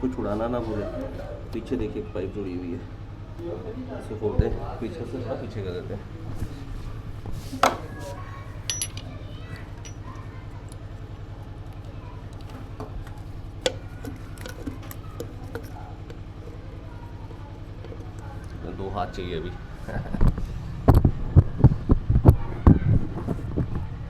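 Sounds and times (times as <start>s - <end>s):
metallic clinks of tools: 8.6s - 10.2s.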